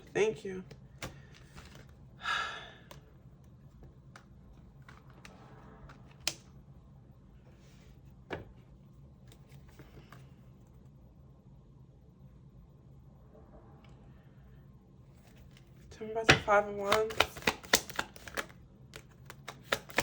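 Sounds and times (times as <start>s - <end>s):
cards rustling: 0.0s - 2.2s, 2.8s - 6.6s, 9.0s - 10.5s, 15.1s - 20.0s
low room hum: 0.0s - 20.0s.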